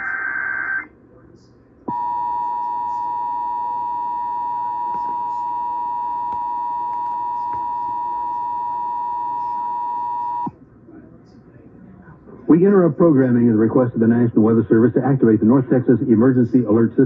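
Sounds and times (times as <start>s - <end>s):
two-tone alert signal over radio: 1.9s - 10.5s.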